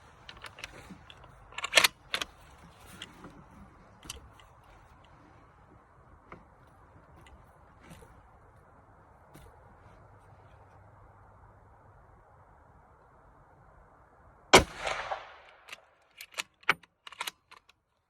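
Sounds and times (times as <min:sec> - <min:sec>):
rifle bolt clicking and rattling: 0:00.0 - 0:05.2, 0:14.6 - 0:17.8.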